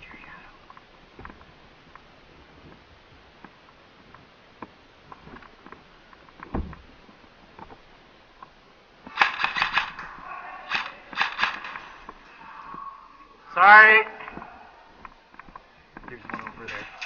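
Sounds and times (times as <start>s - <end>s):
airsoft gun bursts: 9.1s - 12.1s.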